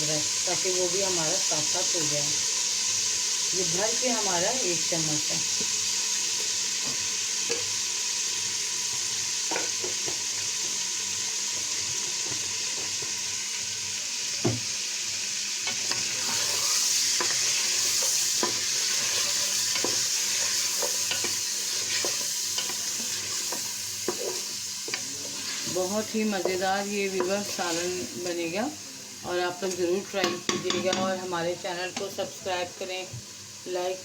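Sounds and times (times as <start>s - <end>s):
meat sizzling in hot oil: 0.0s - 34.0s
spoon scraping a pot: 15.7s - 28.1s.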